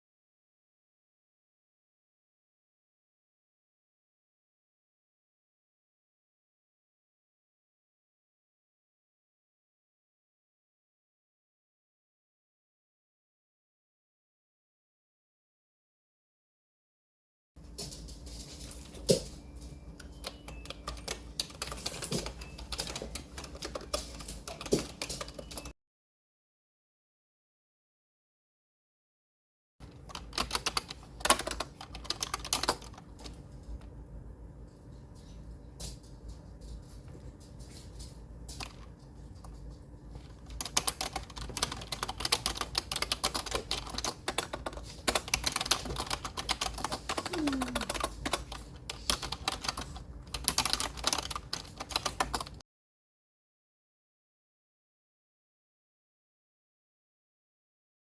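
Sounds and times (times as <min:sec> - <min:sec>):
keyboard typing clicks: 0:20.0 - 0:25.7, 0:29.8 - 0:33.4, 0:40.2 - 0:52.6.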